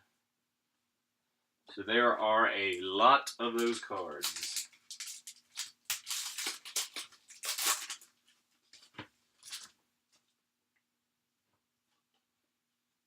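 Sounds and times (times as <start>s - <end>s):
trading cards rustling: 3.4s - 8.1s, 8.7s - 9.7s.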